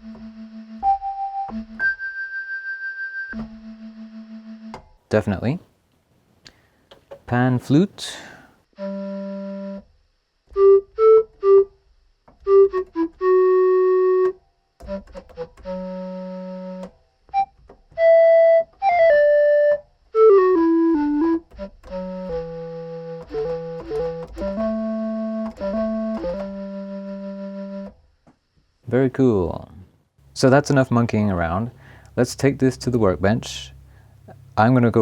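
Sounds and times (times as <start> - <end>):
electronic keyboard playing: 0.0 - 4.8, 10.5 - 11.7, 12.4 - 28.0.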